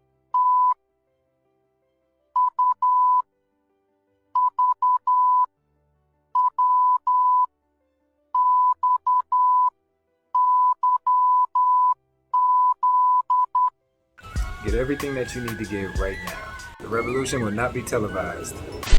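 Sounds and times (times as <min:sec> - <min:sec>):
morse code beeps: 0:00.4 - 0:00.8, 0:02.4 - 0:03.2, 0:04.4 - 0:05.5, 0:06.4 - 0:07.5, 0:08.4 - 0:09.7, 0:10.4 - 0:13.7.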